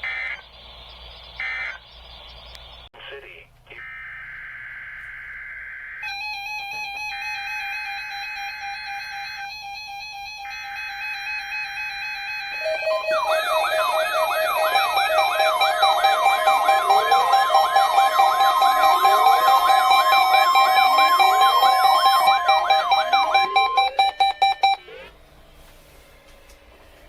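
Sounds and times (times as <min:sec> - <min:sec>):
rising siren-like yelp: 0:12.5 - 0:24.8
rapid tone pulses: 0:12.6 - 0:24.8
steady alert tone: 0:12.6 - 0:24.8.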